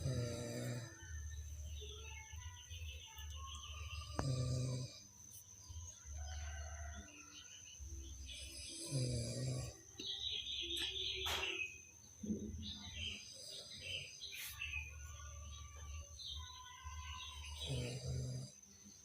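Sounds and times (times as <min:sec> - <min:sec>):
man snoring: 0:00.0 - 0:01.1, 0:04.1 - 0:05.0, 0:08.3 - 0:10.0, 0:17.5 - 0:18.6
birds chirping: 0:00.0 - 0:19.0.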